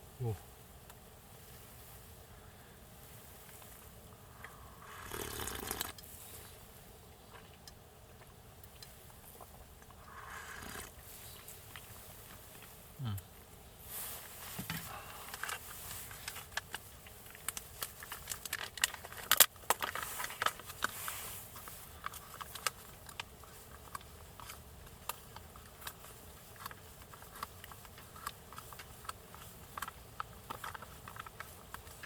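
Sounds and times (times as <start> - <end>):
rain pattering on a tent: 4.9 - 6.0, 9.3 - 32.0.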